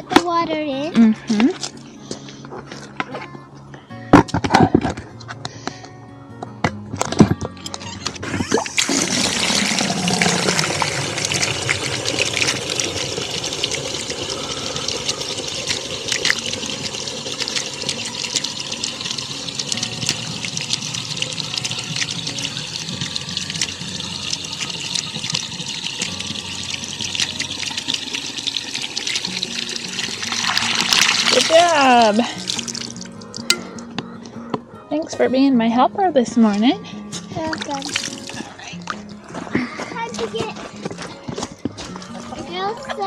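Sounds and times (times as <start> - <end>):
water running and splashing: 8.6 - 33.5, 37.5 - 39.1.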